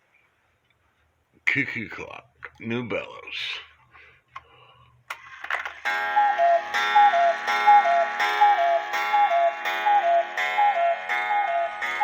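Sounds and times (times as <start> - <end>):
cuckoo clock calling: 5.8 - 12.0.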